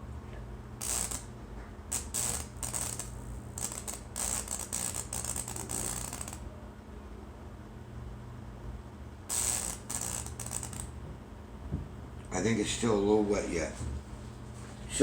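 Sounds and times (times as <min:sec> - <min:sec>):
steady electrical hum: 0:00.0 - 0:15.0
electrical arc crackling and sizzling: 0:00.8 - 0:01.3, 0:01.9 - 0:06.4, 0:09.3 - 0:11.0.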